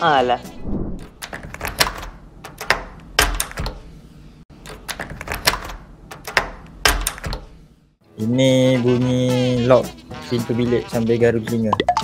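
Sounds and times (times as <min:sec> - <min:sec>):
door lock clicking: 0:01.0 - 0:03.8, 0:04.6 - 0:07.5.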